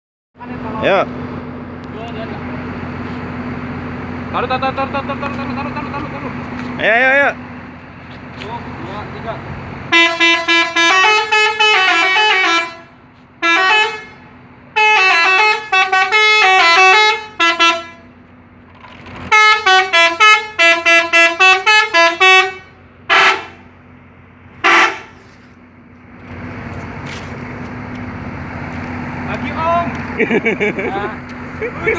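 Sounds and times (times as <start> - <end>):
coach musical horn: 9.9 - 14.2, 14.8 - 18.1, 19.3 - 23.6, 24.6 - 25.2
horn blasts: 9.9 - 18.1, 19.3 - 23.7, 24.6 - 25.4.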